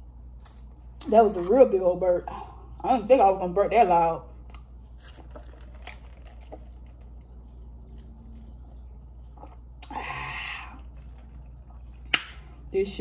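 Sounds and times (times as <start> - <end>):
person chewing food: 4.5 - 12.6.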